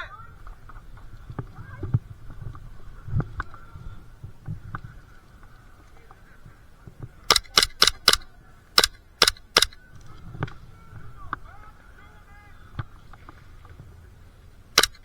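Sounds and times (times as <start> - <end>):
airsoft gun shots: 7.3 - 9.8, 14.8 - 15.0.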